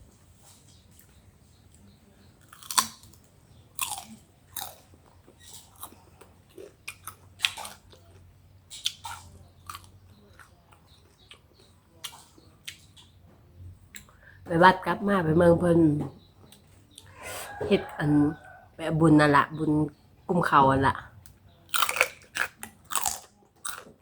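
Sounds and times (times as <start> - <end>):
person chewing crisp mango: 1.8 - 13.2, 21.7 - 24.0.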